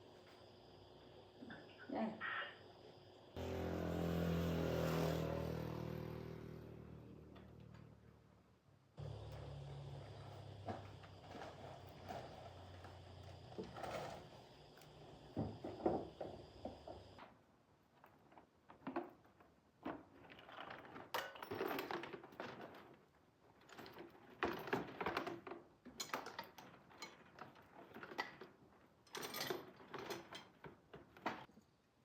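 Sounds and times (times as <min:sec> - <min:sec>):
metal tools clinking and clattering: 0:20.2 - 0:22.9, 0:23.6 - 0:30.7.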